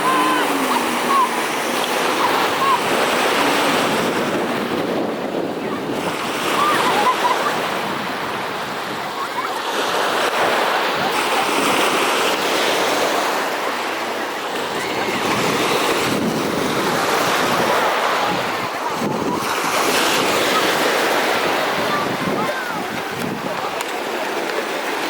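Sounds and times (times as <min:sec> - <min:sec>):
wind buffeting microphone: 0:00.0 - 0:09.3, 0:14.5 - 0:23.9
sea waves washing in surf: 0:00.0 - 0:25.0.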